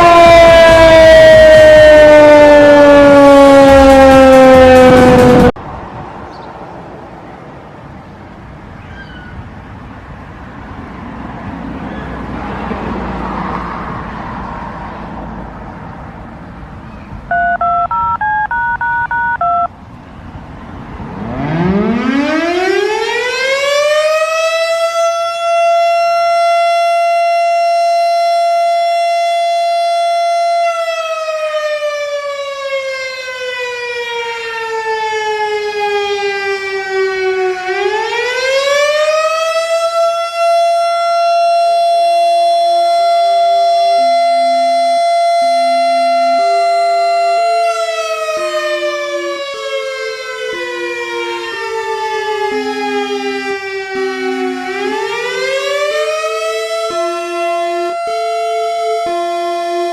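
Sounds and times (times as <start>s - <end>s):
tornado warning siren wailing: 0.0s - 6.0s, 20.1s - 59.9s
telephone keypad tones: 17.3s - 19.7s.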